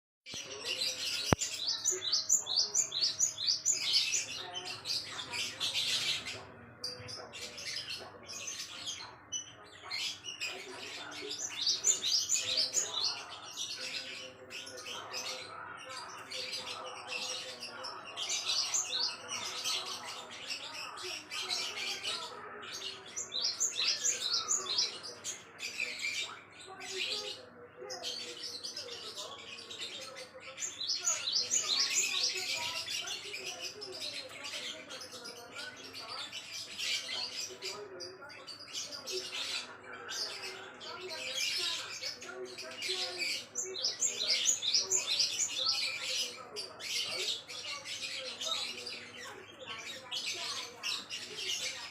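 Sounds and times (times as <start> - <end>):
bird chirping: 0.2 - 51.9.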